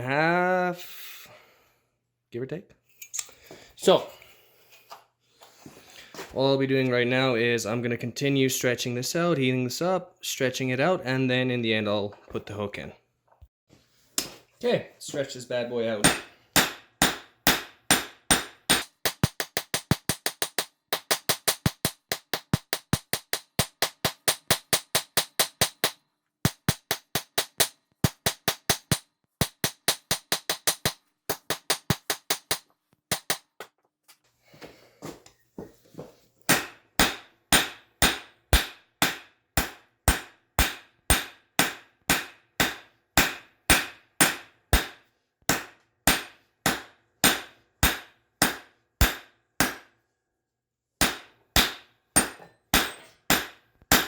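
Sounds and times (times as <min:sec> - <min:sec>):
hammer clanging on an anvil: 0:16.0 - 0:18.8, 0:51.0 - 0:54.0.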